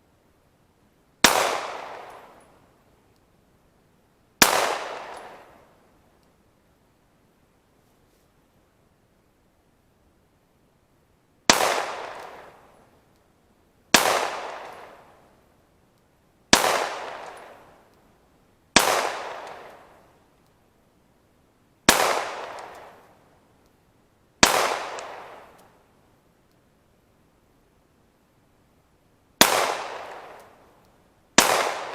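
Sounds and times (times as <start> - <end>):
pistol shots echoing: 1.2 - 2.4, 4.4 - 5.6, 11.5 - 12.6, 14.0 - 15.0, 16.5 - 17.6, 18.8 - 20.0, 21.9 - 23.1, 24.4 - 25.6, 29.4 - 30.6, 31.4 - 31.9.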